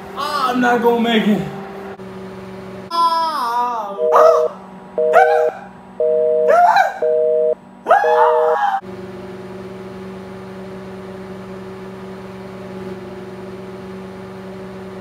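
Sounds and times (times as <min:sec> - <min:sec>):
microwave oven humming: 0:00.0 - 0:15.0
man moaning: 0:02.9 - 0:04.0
pulsed two-tone beeping: 0:04.0 - 0:08.6.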